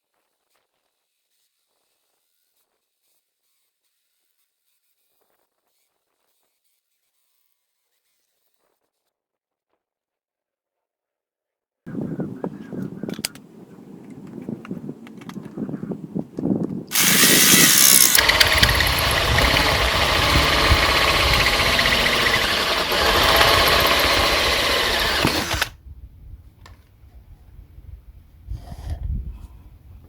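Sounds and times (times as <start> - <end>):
cutter cutting into aluminium: 16.9 - 25.8.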